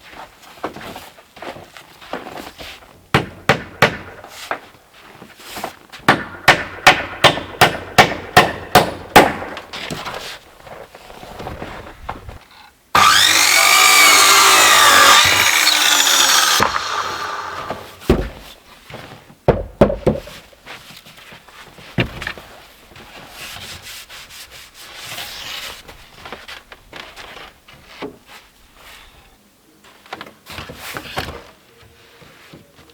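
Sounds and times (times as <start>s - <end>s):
power saw cutting board: 13.0s - 18.0s
knocks of wood being handled: 13.0s - 20.5s.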